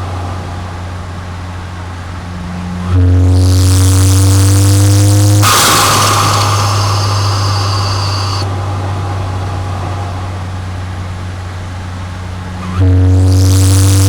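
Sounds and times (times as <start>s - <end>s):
turbo whine: 2.8s - 8.5s, 12.8s - 14.0s
car engine revving: 3.2s - 8.4s.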